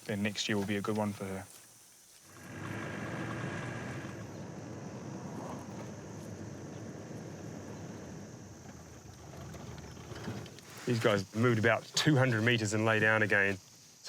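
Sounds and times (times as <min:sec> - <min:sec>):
vehicle engine rumbling: 0:02.3 - 0:13.5.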